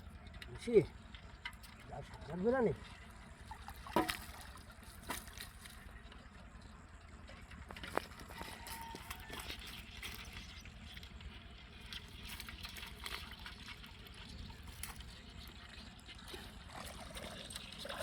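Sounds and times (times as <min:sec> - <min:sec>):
water trickling and splashing: 0:00.0 - 0:18.0.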